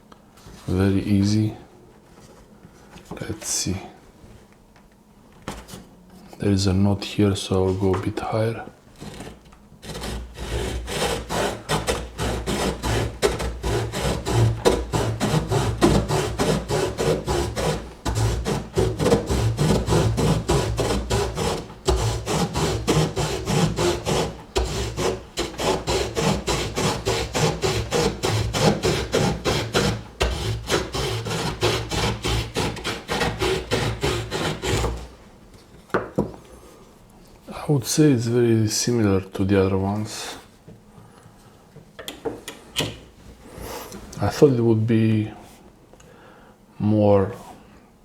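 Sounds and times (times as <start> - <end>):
saw blade sawing branch: 9.0 - 35.1.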